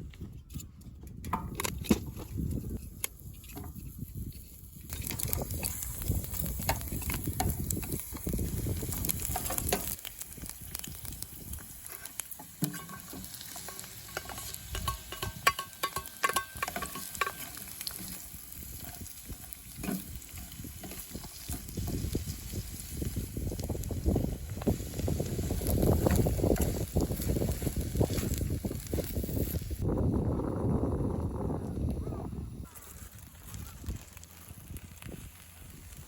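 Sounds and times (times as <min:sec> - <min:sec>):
food sizzling in frying pan: 0:04.0 - 0:29.8
utensil scraping pan: 0:11.8 - 0:22.6.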